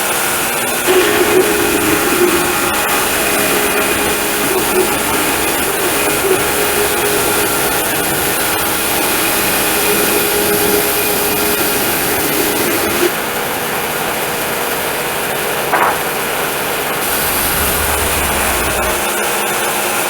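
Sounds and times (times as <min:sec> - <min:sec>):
sawmill cutting log: 0:00.8 - 0:13.1, 0:17.0 - 0:19.1.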